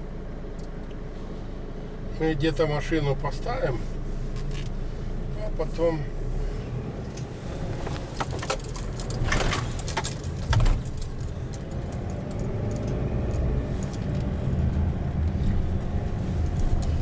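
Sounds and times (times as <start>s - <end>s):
car engine and road noise: 0.0s - 17.0s
clicks and rattles: 7.8s - 14.8s.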